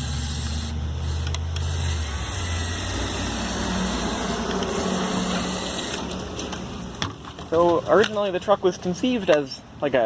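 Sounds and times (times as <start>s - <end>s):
toy electric motor whirring: 0.0s - 6.2s.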